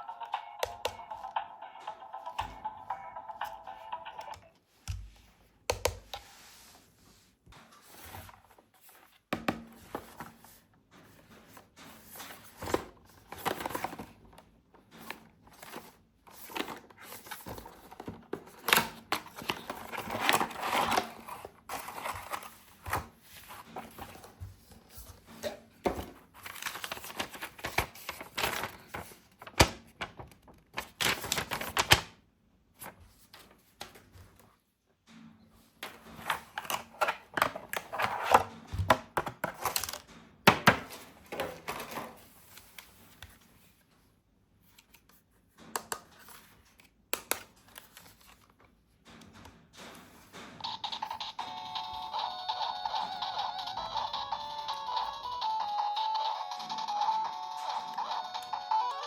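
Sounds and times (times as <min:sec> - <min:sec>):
packaging crinkling and rustling: 0:26.3 - 0:32.1.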